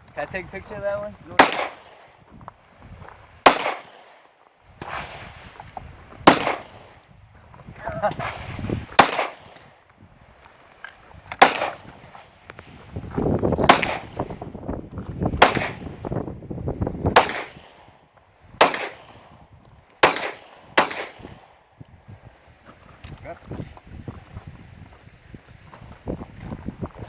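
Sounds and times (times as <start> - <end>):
gunshots with echo: 1.3 - 2.1, 3.4 - 4.2, 6.2 - 7.0, 8.2 - 9.7, 11.4 - 12.1, 13.6 - 14.4, 15.4 - 16.0, 17.1 - 18.0, 18.6 - 19.3, 20.0 - 21.6.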